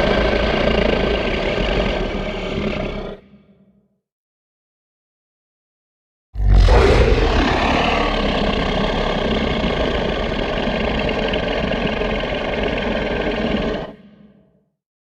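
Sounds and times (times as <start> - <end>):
rough rumbling monster roar: 0.0 - 3.5, 6.4 - 14.4.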